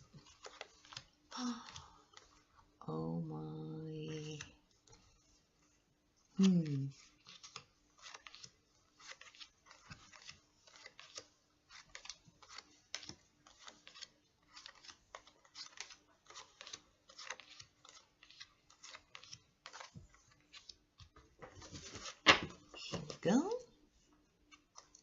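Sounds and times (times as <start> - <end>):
cards tapping and sliding: 0.1 - 2.4, 7.0 - 23.2.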